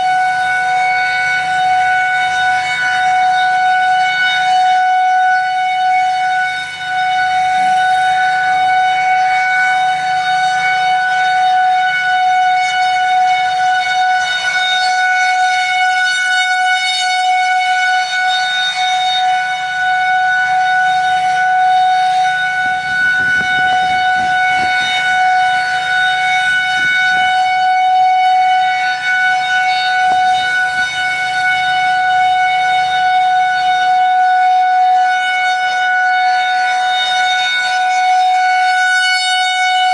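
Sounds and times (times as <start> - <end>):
wind rumble on microphone: 0.0 - 15.0, 18.8 - 34.9
warning siren steady tone: 0.0 - 39.9.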